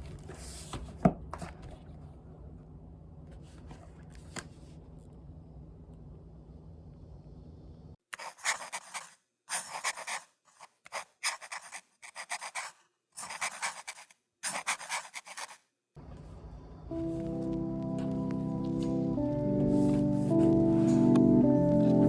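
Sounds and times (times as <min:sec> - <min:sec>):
background music: 0:16.7 - 0:22.0.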